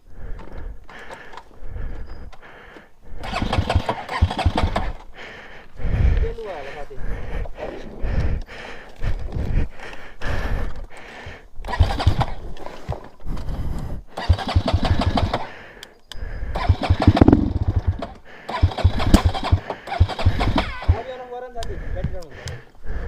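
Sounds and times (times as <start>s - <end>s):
motorcycle engine cranking and firing: 3.2s - 5.1s, 11.6s - 12.5s, 14.1s - 15.5s, 16.5s - 21.1s.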